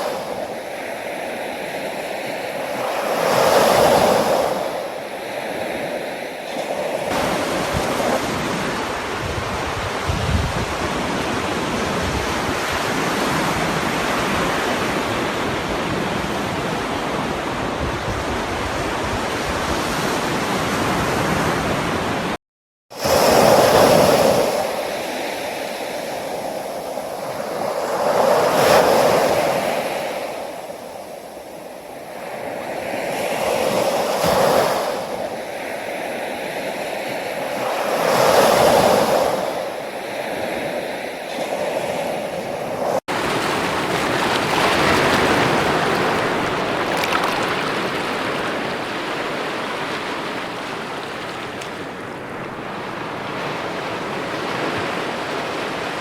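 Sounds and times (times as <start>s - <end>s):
ocean waves washing in: 0.0s - 15.8s, 40.8s - 56.0s
continuous rush of surf: 0.0s - 22.4s, 23.0s - 56.0s.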